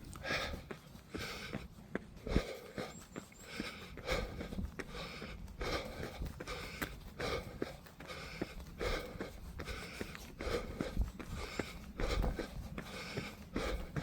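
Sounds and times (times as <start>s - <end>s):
runner breathing hard: 0.0s - 14.0s
dull low thuds: 4.0s - 14.0s.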